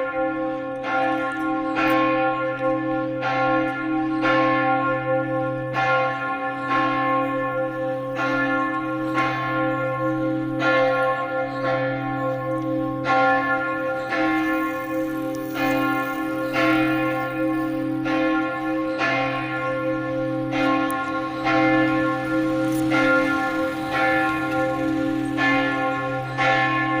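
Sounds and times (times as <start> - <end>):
church bell pealing: 0.0 - 27.0.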